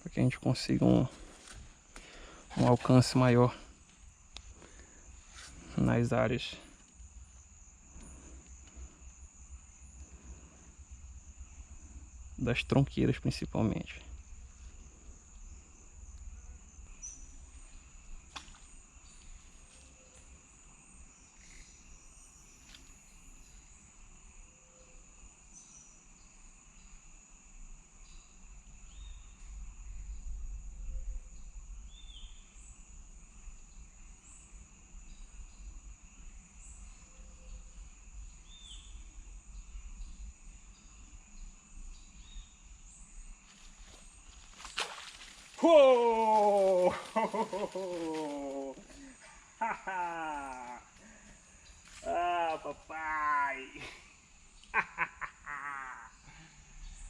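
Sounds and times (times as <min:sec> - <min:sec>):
high-pitched insect drone: 0:28.0 - 0:57.0.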